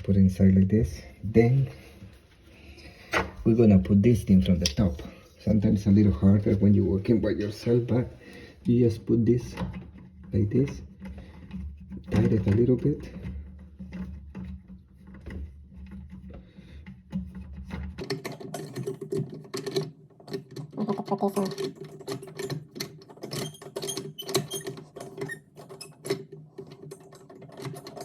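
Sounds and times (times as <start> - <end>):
metal hardware clicking and rattling: 17.9 - 28.0.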